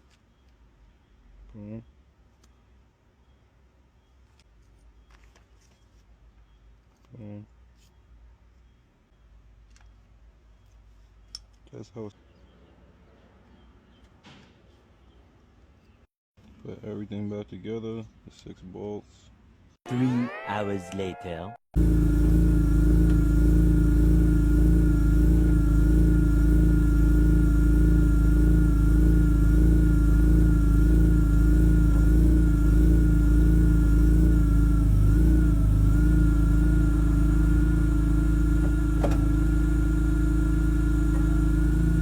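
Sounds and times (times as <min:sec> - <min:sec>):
car engine humming with whine: 0:21.8 - 0:42.0.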